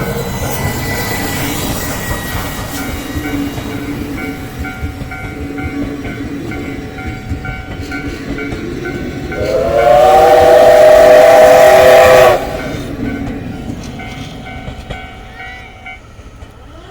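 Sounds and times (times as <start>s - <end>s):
steam train rumbling by: 0.0s - 16.9s
steam locomotive whistle: 9.2s - 13.0s
level-crossing bell ringing: 12.6s - 16.2s.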